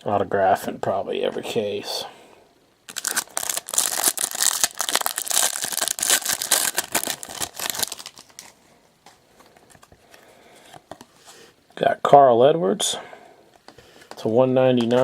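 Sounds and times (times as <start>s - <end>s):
wrapper crinkling and tearing: 2.9s - 8.6s.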